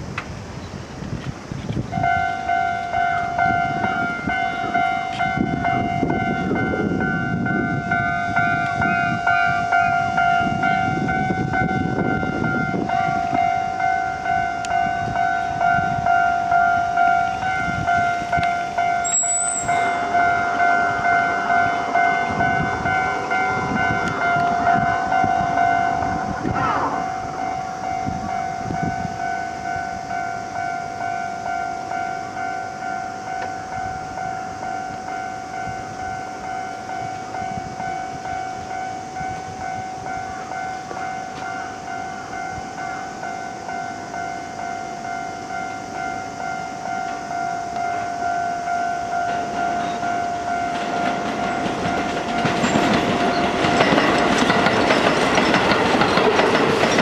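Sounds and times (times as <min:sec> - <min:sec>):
level crossing bell ringing: 0:02.0 - 0:52.9
train wheels clattering: 0:49.2 - 0:57.0.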